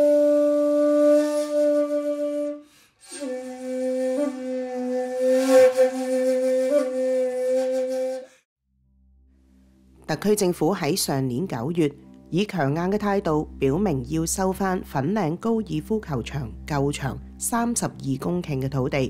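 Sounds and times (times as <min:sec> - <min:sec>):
flute-like low held notes: 0:00.0 - 0:08.4.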